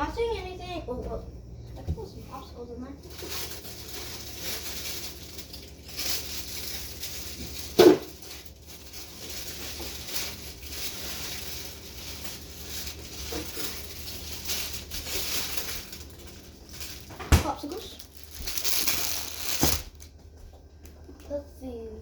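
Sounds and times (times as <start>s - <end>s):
household items rummaged through: 3.0s - 20.2s.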